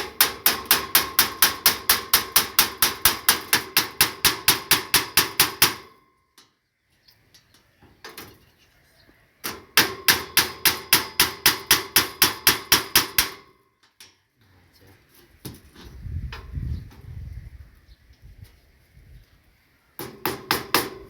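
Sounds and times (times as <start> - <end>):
hammer ringing on fence: 0.0 - 6.0, 9.8 - 13.5.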